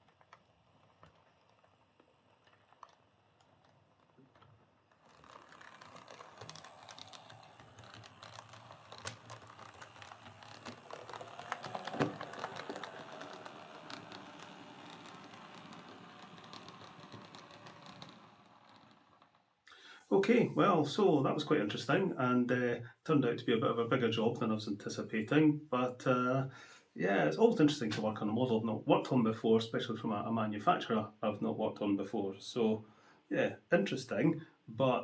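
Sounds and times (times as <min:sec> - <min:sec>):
model train clicking and rattling: 0:00.0 - 0:19.6
low motor hum: 0:00.7 - 0:19.5.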